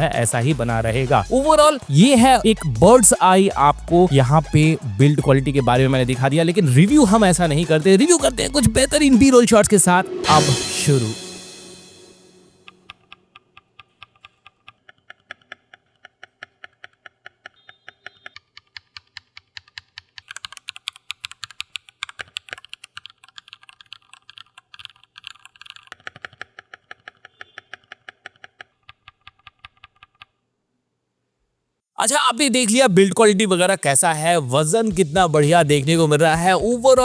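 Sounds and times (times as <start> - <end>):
mechanical keyboard typing: 13.8 - 30.3.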